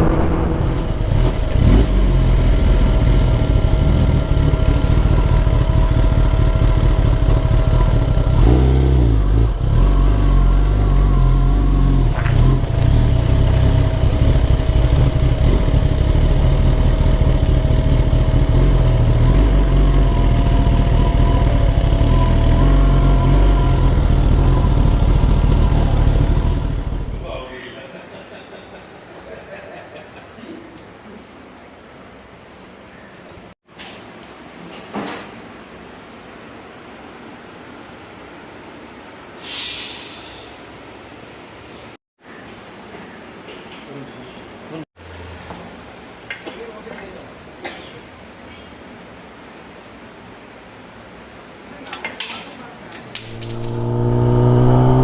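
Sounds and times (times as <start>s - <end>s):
motorcycle engine running: 0.0s - 27.2s, 53.2s - 55.0s.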